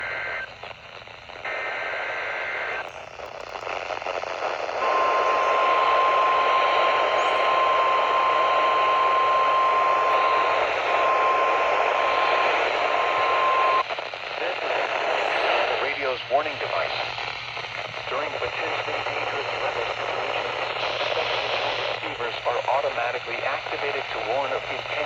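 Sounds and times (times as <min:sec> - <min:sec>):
radio static: 0:00.0 - 0:25.0
steady warning alarm tone: 0:04.8 - 0:13.8.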